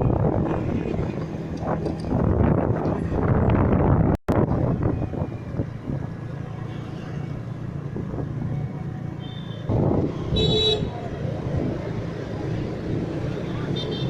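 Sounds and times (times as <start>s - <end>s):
strong gusting wind: 0.0s - 9.0s, 9.6s - 13.8s.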